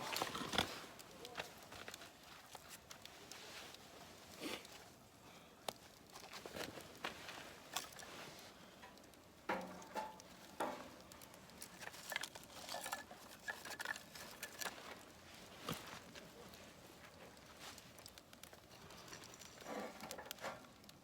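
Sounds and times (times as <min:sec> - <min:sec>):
metal cookware knocks and clinks: 0:09.5 - 0:10.8.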